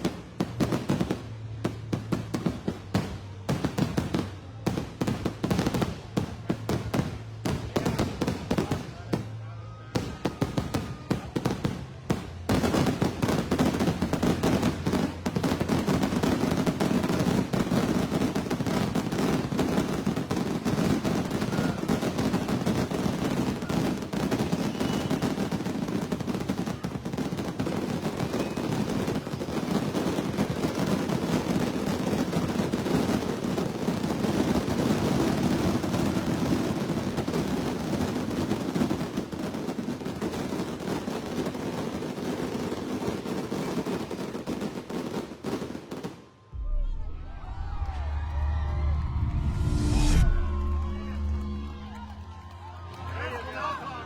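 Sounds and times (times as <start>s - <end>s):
fireworks bangs and crackles: 0.0s - 54.0s.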